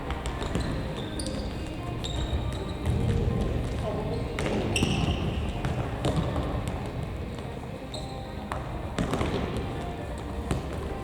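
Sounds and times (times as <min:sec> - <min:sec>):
shoe squeak: 0:00.4 - 0:03.1, 0:04.0 - 0:05.6, 0:07.8 - 0:08.4
ball kicked and bouncing: 0:02.6 - 0:07.0, 0:08.5 - 0:09.8, 0:10.4 - 0:11.0.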